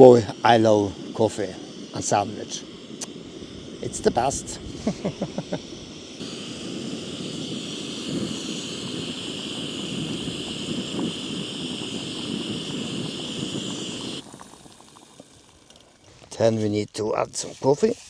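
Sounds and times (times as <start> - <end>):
camping stove burner hissing: 0.0 - 18.0.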